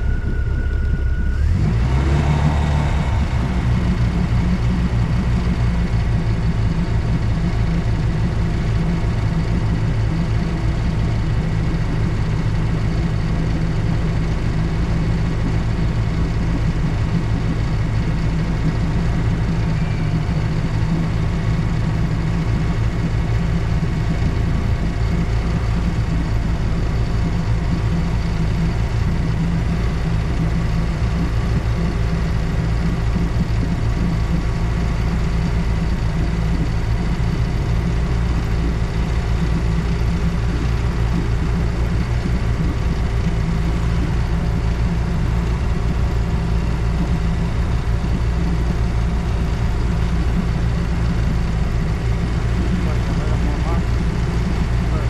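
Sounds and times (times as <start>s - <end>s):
boat engine idling: 0.0s - 55.0s.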